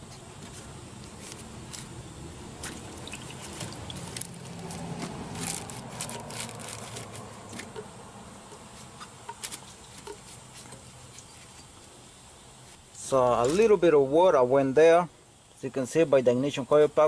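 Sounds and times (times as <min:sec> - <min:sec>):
faint steady hum: 0:00.0 - 0:17.0
hand tools clicking and scraping: 0:03.4 - 0:07.9, 0:08.5 - 0:11.7.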